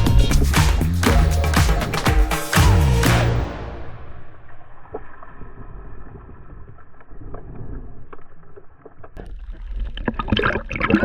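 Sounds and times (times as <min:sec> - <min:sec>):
underwater rumbling water movement: 0:04.0 - 0:11.0.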